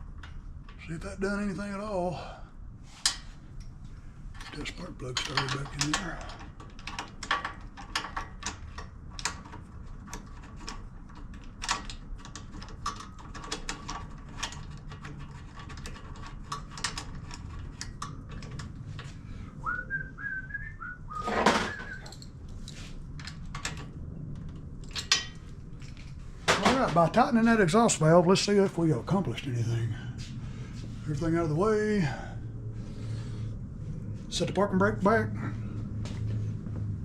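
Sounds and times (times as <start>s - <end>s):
rising stepped whistle: 19.6s - 22.2s.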